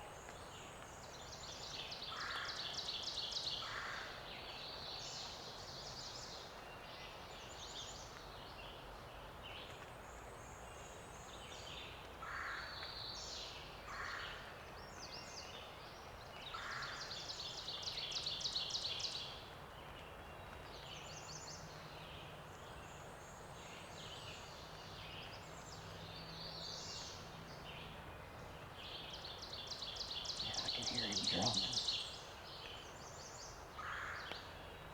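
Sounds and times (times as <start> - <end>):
songbirds singing: 22.9 - 34.8
loud rapid bird trill: 30.2 - 32.0.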